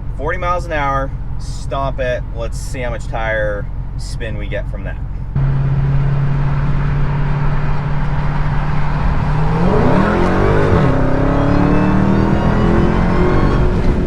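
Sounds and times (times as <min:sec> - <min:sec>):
car engine accelerating hard: 0:05.1 - 0:14.0.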